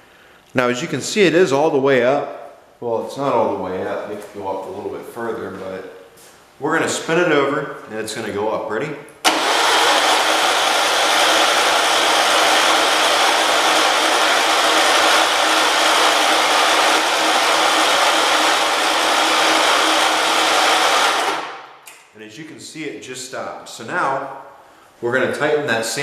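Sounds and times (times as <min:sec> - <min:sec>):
engine cranking drone: 0:09.3 - 0:21.6.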